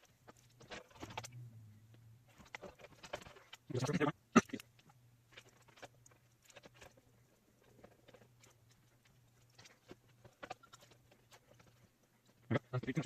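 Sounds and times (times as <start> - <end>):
steady low hum: 1.0 - 5.3.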